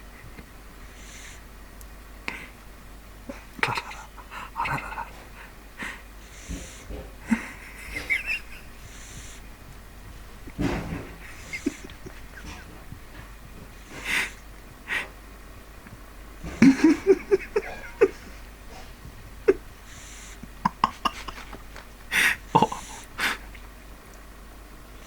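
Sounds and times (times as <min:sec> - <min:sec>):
dog snorting and wheezing: 0:03.3 - 0:15.2, 0:15.9 - 0:23.6.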